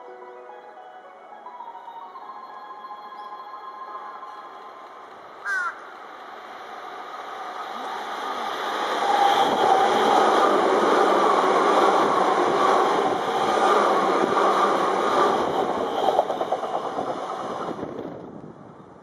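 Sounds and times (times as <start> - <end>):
train wheels rushing on rail: 4.7 - 19.0
rail-joint clicks: 11.8 - 18.5.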